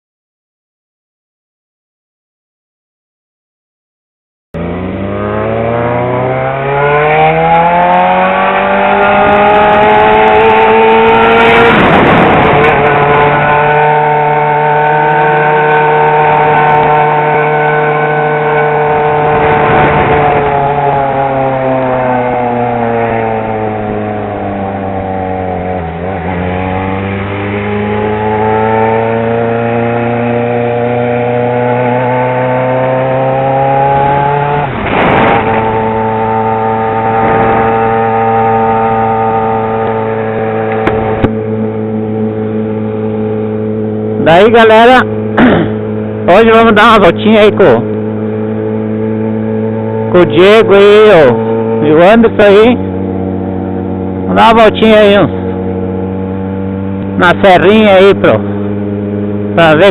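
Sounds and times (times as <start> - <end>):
motorcycle engine running: 4.6 - 59.9
rush of noise: 33.8 - 41.8.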